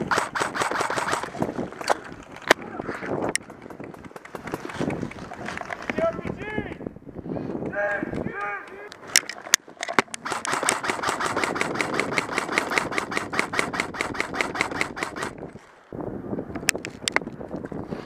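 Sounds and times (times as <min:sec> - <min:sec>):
airsoft rifle rapid shots: 0:00.0 - 0:01.4, 0:10.2 - 0:15.4.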